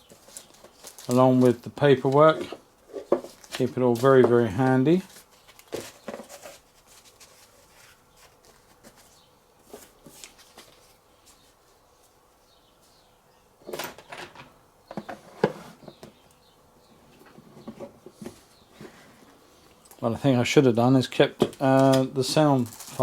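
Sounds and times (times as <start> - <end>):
packaging clicks and rustles: 0.0 - 4.2, 21.4 - 23.0.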